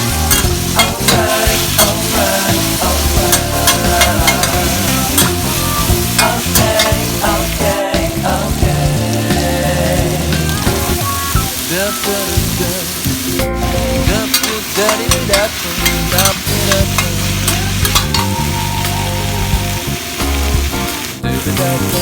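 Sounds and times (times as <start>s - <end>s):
food sizzling in oil: 0.0s - 22.0s.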